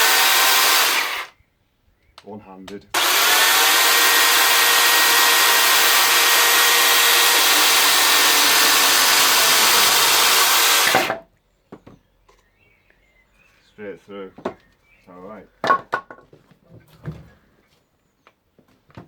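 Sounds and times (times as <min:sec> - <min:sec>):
electric chainsaw cutting wood: 0:00.0 - 0:01.3, 0:03.0 - 0:11.2.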